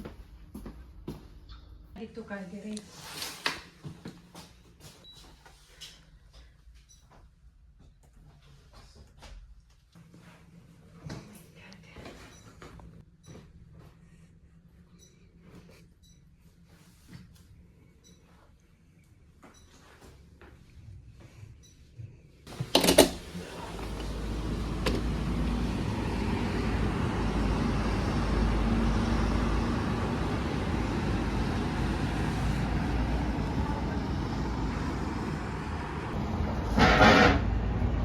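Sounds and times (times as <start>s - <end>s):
vehicle interior rumble: 22.5s - 38.0s.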